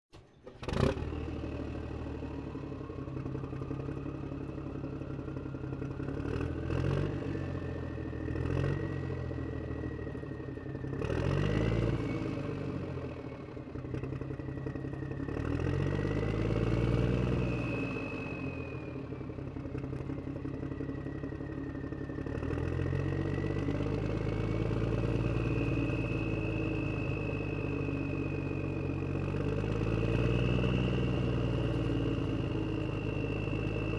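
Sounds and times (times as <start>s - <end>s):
thin whine: 20.2s - 33.9s.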